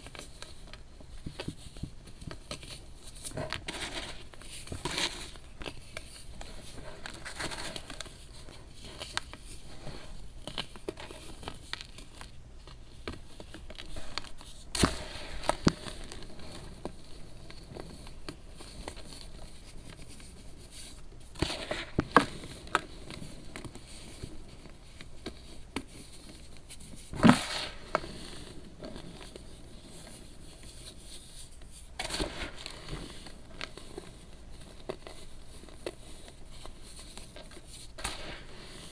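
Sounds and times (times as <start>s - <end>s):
baking soda crackling: 37.1s - 38.9s.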